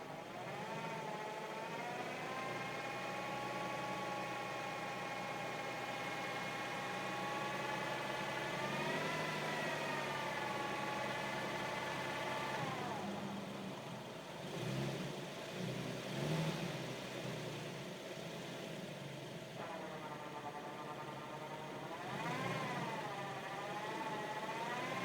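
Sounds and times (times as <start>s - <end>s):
car engine running: 16.8s - 25.0s
high multi-tone engine whine: 19.3s - 25.0s.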